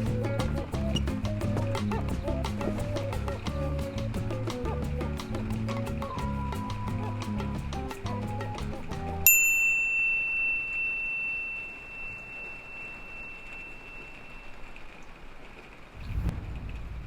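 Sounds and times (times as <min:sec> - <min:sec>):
background music: 0:00.0 - 0:09.3
high bell-like ding: 0:09.2 - 0:14.8.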